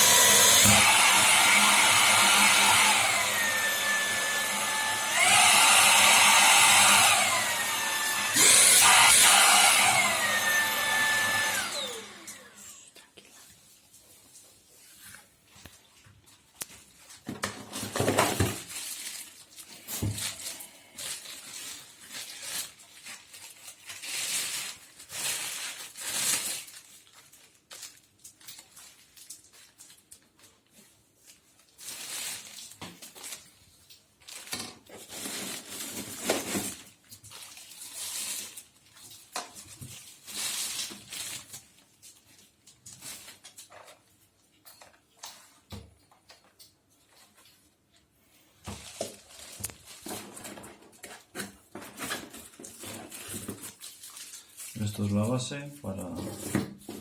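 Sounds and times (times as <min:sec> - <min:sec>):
vacuum cleaner motor running: 0:00.0 - 0:12.8.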